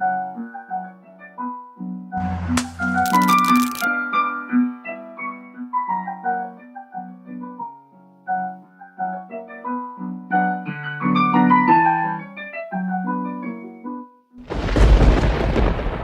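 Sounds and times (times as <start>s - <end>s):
short burst of noise: 2.2s - 3.9s
piano music: 2.2s - 7.5s.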